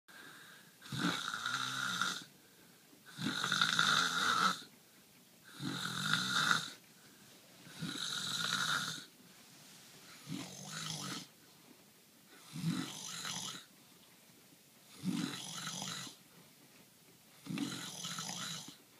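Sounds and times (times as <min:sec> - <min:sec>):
quiet breaths: 0:00.1 - 0:18.9
man snoring: 0:00.8 - 0:02.3, 0:03.1 - 0:04.7, 0:05.5 - 0:06.8, 0:07.7 - 0:09.1, 0:10.2 - 0:11.3, 0:12.4 - 0:13.7, 0:14.9 - 0:16.2, 0:17.4 - 0:18.8.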